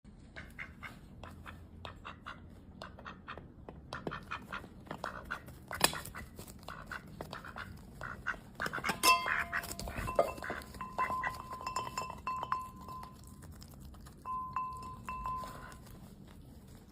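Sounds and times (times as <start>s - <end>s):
duck quacking: 0.4s - 11.4s.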